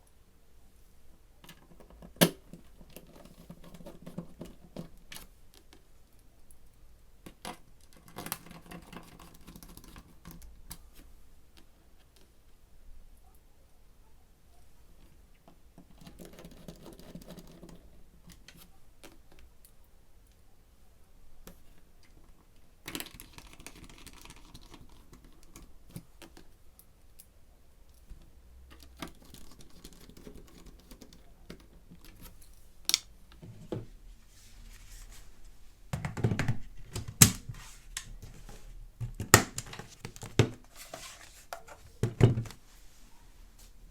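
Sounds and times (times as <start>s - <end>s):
faint clicks and rustles: 14.4s - 35.7s.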